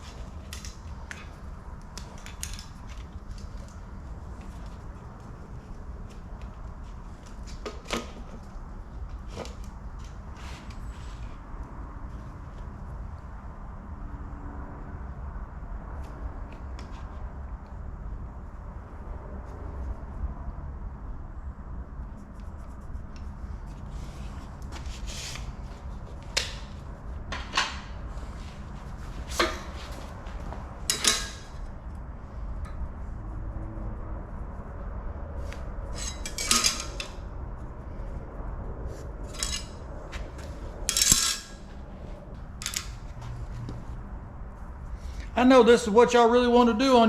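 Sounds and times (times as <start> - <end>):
steady low hum: 0.0 - 46.8
metal tools clinking and clattering: 30.9 - 31.6, 36.0 - 37.2, 39.4 - 39.8, 40.9 - 41.7.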